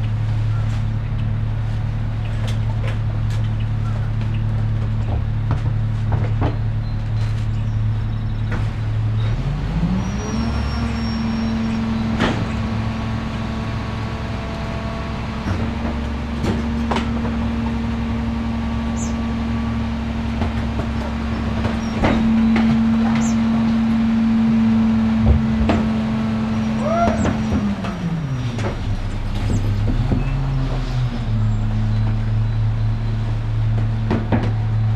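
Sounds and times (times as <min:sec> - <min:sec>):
truck engine revving: 0:01.3 - 0:34.9
sharp knocks and bangs: 0:12.0 - 0:12.9, 0:15.4 - 0:18.2, 0:20.2 - 0:30.9, 0:33.7 - 0:34.8.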